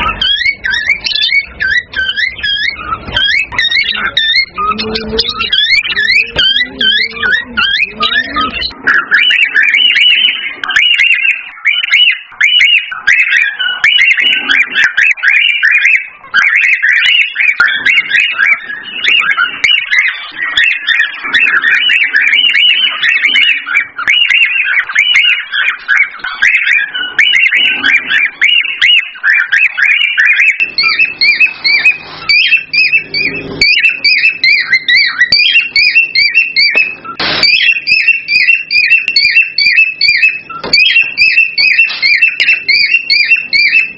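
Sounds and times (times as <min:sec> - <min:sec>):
cockatiels whistling and chirping: 0:00.0 - 0:43.9.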